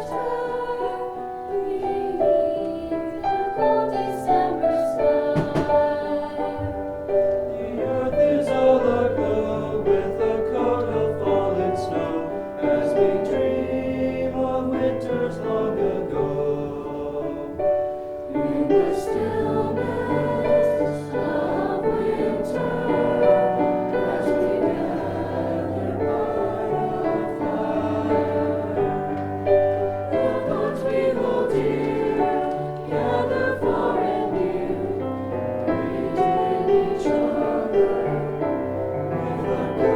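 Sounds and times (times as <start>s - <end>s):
choir singing held chords: 0.0s - 39.9s.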